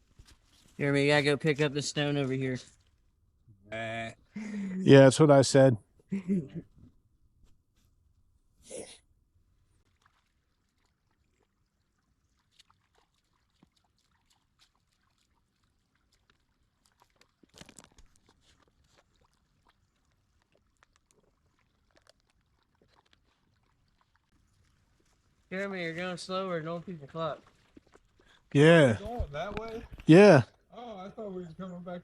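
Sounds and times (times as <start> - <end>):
rustling noise: 0.0 - 0.8
faint ticks and crunches: 11.9 - 30.1.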